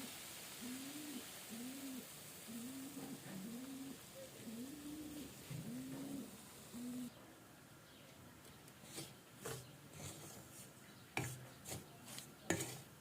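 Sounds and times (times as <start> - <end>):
pigeon cooing: 0.6 - 7.2.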